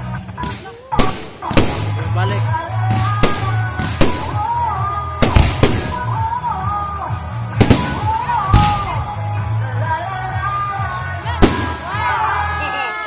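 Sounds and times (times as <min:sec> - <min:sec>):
loud music with bass: 0:00.0 - 0:13.0
fireworks bangs: 0:00.4 - 0:06.5, 0:07.6 - 0:09.2, 0:11.4 - 0:12.4.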